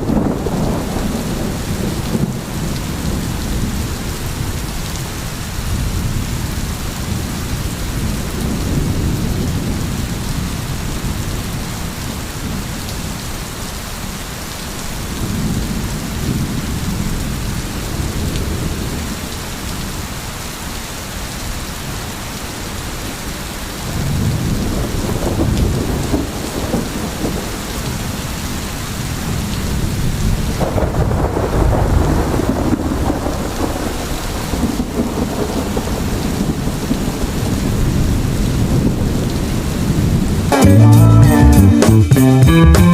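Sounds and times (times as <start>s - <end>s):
low rolling thunder: 0.0s - 4.8s, 15.1s - 19.2s, 23.8s - 40.5s
heavy rain: 0.0s - 42.9s.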